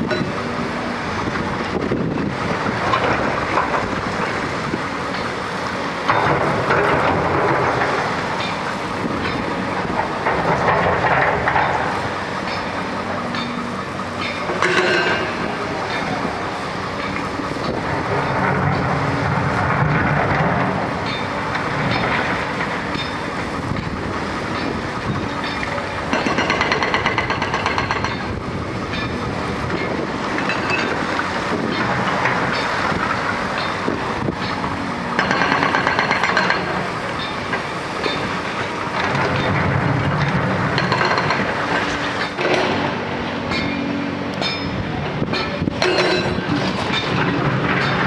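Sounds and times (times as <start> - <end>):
excavator diesel engines running: 0.0 - 48.0
rubble and steel clanking: 0.0 - 48.0
hydraulic breaker hammering: 14.2 - 48.0.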